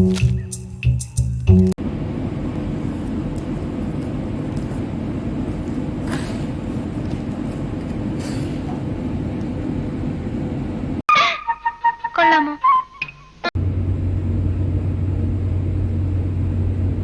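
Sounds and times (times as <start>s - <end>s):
vehicle engine rumble: 1.7s - 11.0s, 13.6s - 17.0s
faint brief hisses: 8.2s - 8.8s.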